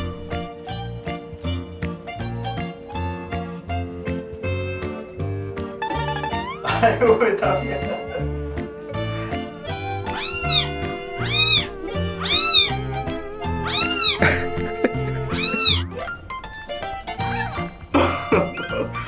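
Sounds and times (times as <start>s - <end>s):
background music: 0.0s - 19.0s
kitten meowing: 9.7s - 15.9s.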